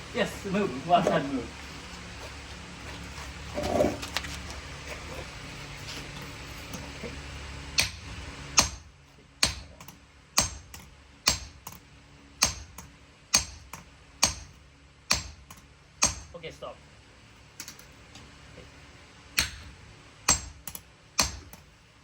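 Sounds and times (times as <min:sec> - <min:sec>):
steady hum: 0:00.0 - 0:22.0
hammer striking blade on anvil: 0:07.8 - 0:08.0, 0:08.6 - 0:09.8, 0:10.4 - 0:11.6, 0:12.4 - 0:14.5, 0:15.1 - 0:16.3, 0:20.3 - 0:21.4.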